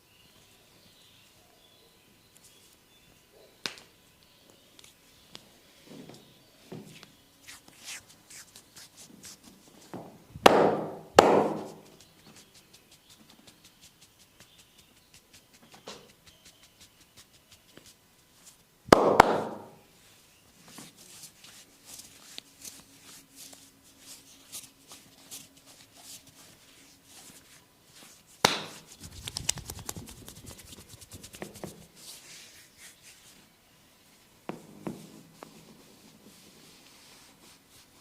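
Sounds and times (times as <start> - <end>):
hands smacking skin: 10.5 - 18.0, 28.4 - 31.8
rapid tapping on skin: 10.5 - 18.0, 28.4 - 31.9.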